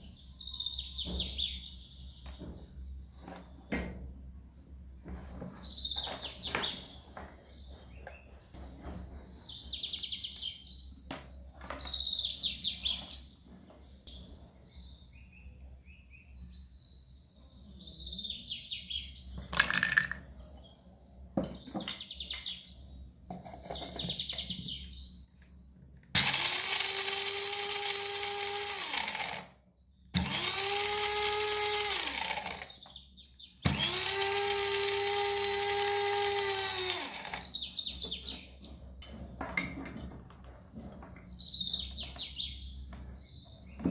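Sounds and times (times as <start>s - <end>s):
electric blender motor whine: 26.2s - 29.6s, 30.2s - 32.7s, 33.7s - 37.5s.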